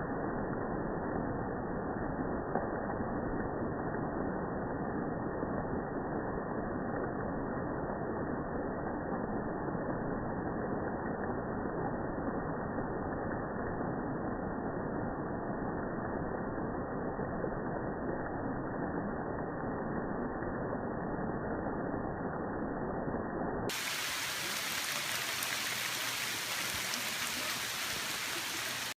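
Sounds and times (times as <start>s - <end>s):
rain falling on foliage: 23.7s - 29.0s.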